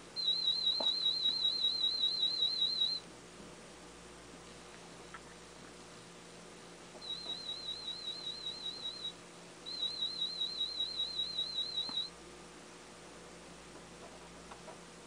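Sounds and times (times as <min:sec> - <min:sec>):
high-pitched warble tones: 0:07.0 - 0:09.1.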